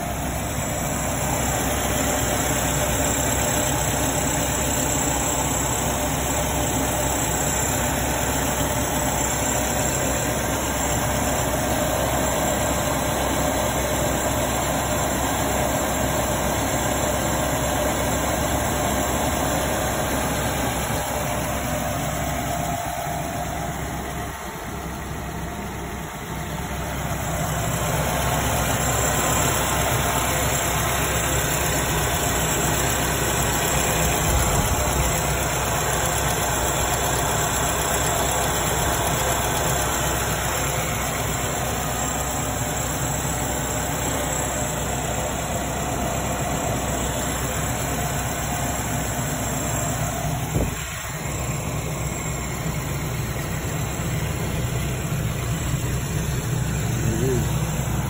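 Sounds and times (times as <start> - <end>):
car engine idling: 0.0 - 58.0.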